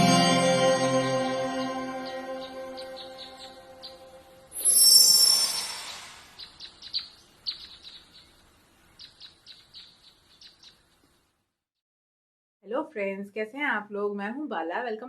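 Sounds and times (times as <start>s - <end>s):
bright shimmering sound: 0.0s - 6.4s
small birds chirping: 2.0s - 11.3s.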